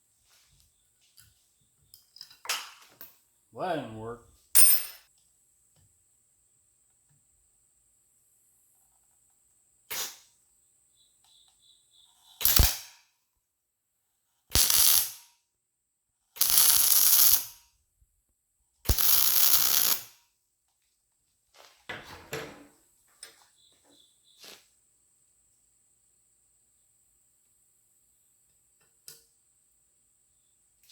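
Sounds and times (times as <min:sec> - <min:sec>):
welder crackling: 0:12.4 - 0:12.9, 0:14.5 - 0:15.2, 0:16.4 - 0:17.6, 0:18.9 - 0:20.2.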